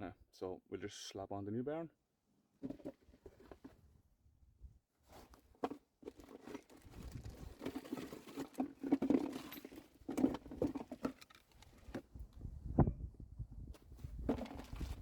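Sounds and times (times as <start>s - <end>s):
parts clicking and clattering: 6.1s - 12.1s.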